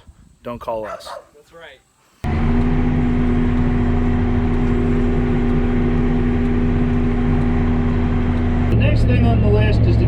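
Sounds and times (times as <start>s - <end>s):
vehicle engine droning: 2.2s - 10.0s.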